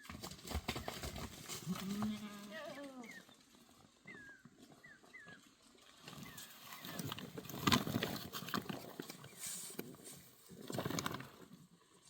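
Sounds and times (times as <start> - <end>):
livestock calling: 1.6 - 3.3.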